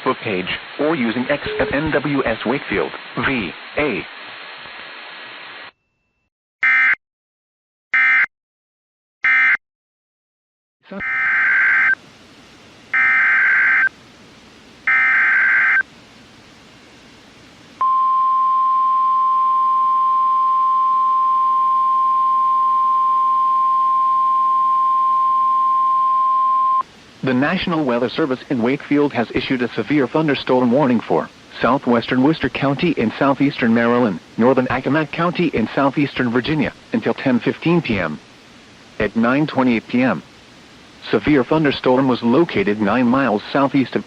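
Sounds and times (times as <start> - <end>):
steady weather radio alert tone: 0.8 - 4.1, 10.9 - 12.0, 12.9 - 13.9, 14.9 - 15.8
screechy data bursts: 11.0 - 12.0, 13.0 - 13.9, 14.9 - 15.8.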